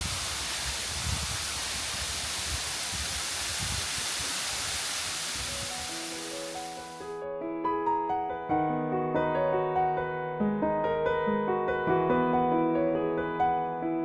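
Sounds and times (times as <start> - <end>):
waterfall roaring: 0.0 - 7.0
quiet piano music: 5.6 - 14.0.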